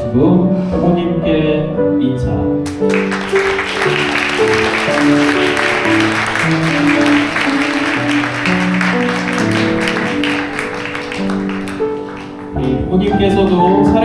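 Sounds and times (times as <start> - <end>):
instrumental music with held notes: 0.0 - 14.0
audience applause: 2.6 - 13.8.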